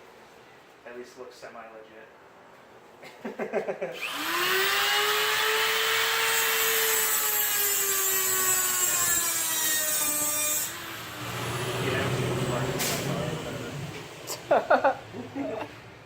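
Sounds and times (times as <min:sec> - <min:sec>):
power tool grinding: 0:04.0 - 0:14.1.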